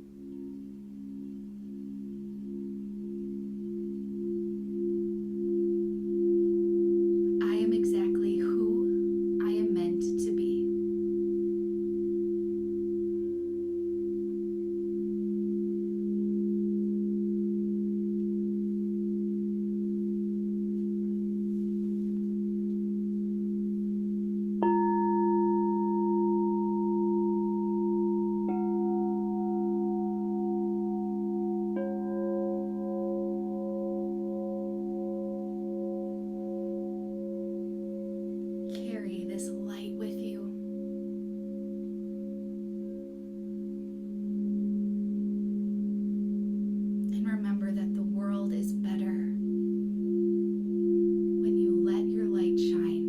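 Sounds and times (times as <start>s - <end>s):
singing bowls droning: 0.0s - 53.0s
high wavering sound: 24.6s - 53.0s.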